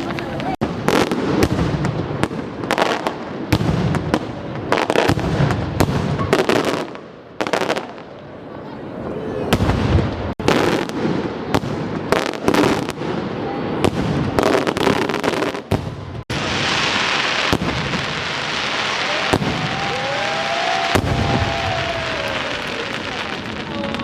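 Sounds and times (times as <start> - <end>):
fireworks crackling hiss: 0.0 - 8.0, 9.7 - 24.0
fireworks bangs: 0.0 - 8.4, 9.5 - 24.0
fireworks whistling: 9.5 - 24.0.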